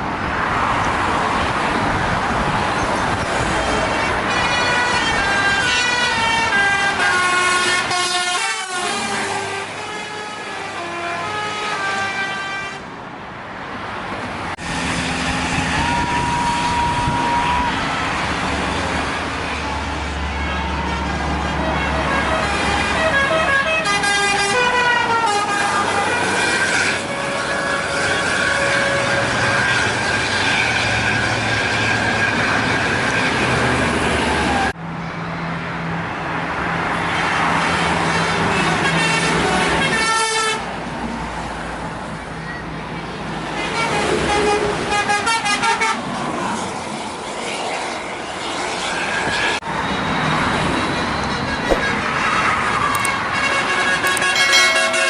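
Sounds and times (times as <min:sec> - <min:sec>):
bus engines passing: 0:00.0 - 0:55.0
traffic noise: 0:00.0 - 0:55.0
multi-tone musical air horns: 0:03.7 - 0:12.9, 0:15.6 - 0:17.7, 0:20.3 - 0:32.4, 0:52.9 - 0:55.0.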